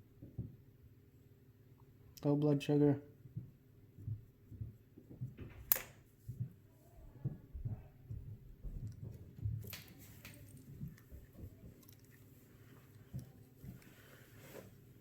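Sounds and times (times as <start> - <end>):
soft taps and rustles: 3.2 - 15.0
sharp click: 5.7 - 6.0.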